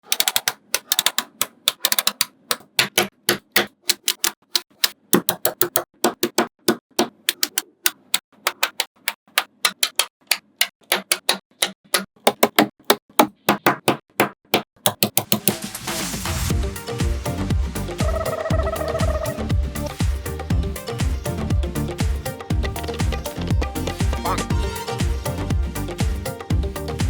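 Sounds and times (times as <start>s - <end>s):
magnetic balls clicking together: 0.0s - 6.5s, 7.3s - 12.1s.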